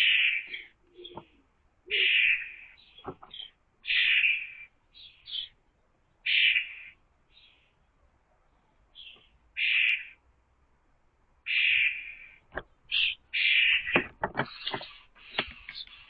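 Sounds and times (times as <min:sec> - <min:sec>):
bird harsh scratchy calls: 0:00.0 - 0:04.7, 0:06.3 - 0:07.0, 0:09.6 - 0:10.2, 0:11.5 - 0:16.0.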